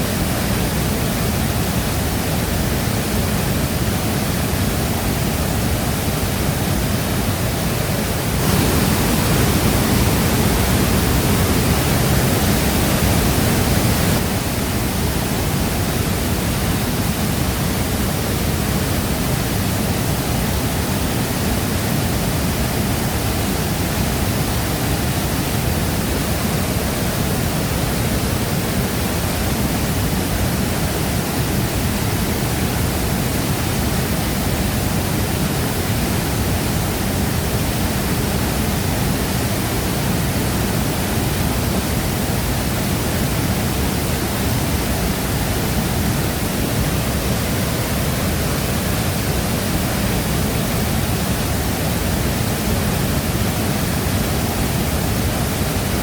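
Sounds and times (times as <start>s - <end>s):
waterfall crashing: 0.0s - 56.0s.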